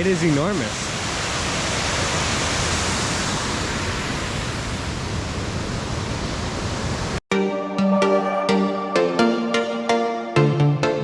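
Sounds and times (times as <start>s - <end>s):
waterfall crashing into pool: 0.0s - 7.2s.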